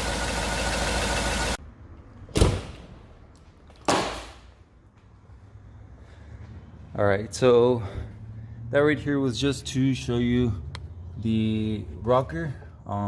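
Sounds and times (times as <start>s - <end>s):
engine idling: 0.0s - 1.6s
loud slams: 2.3s - 2.9s.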